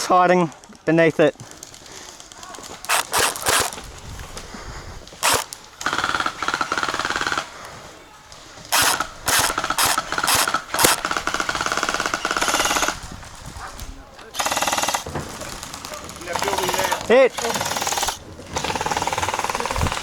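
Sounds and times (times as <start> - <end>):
full-auto gel blaster bursts: 2.3 - 3.9, 5.2 - 7.6, 8.7 - 13.1, 14.4 - 20.0
gel blaster shots: 2.9 - 3.8, 5.2 - 5.5, 8.8 - 11.0.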